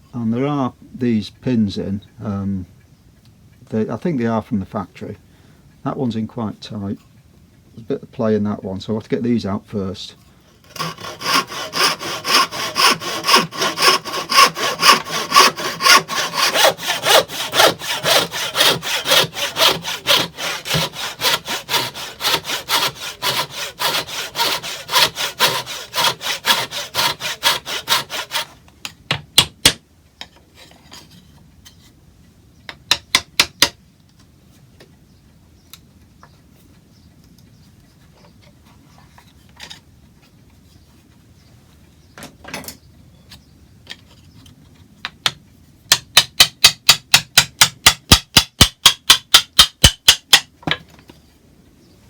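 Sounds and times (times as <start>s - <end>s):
hand saw cutting wood: 10.6s - 28.6s.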